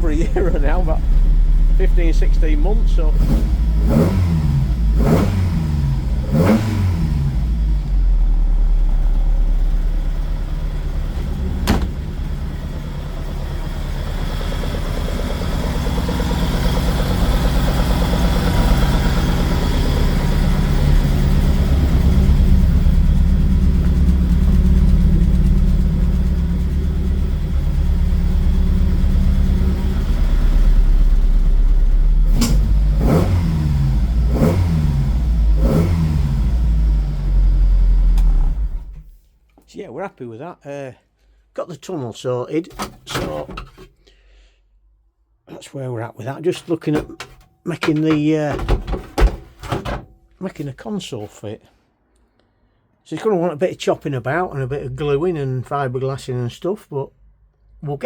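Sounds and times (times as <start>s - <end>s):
car engine revving: 0.0s - 39.0s
sharp click: 32.3s - 32.7s.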